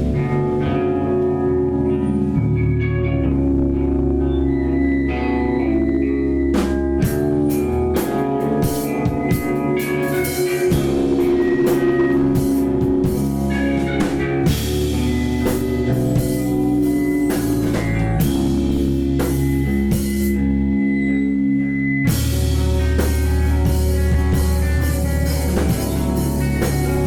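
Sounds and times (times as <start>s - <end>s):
bass guitar: 0.0s - 27.0s
electric guitars: 0.0s - 27.0s
drum kit with cymbals: 6.5s - 20.6s, 22.1s - 27.0s.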